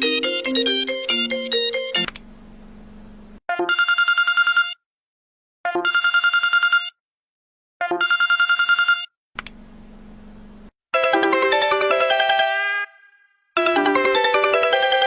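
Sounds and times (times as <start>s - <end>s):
phone ringing: 0.0s - 2.1s, 3.5s - 4.8s, 5.7s - 7.0s, 7.9s - 9.1s.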